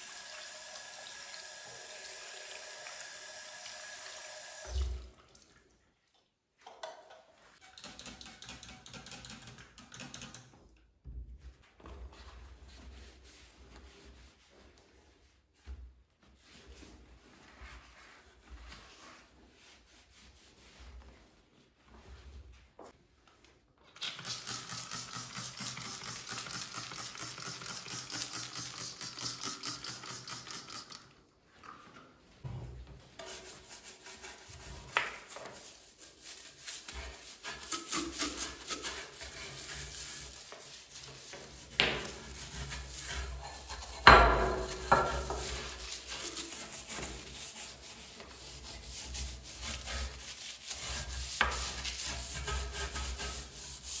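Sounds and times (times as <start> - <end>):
cloth rubbing over surface: 12.3 - 22.8.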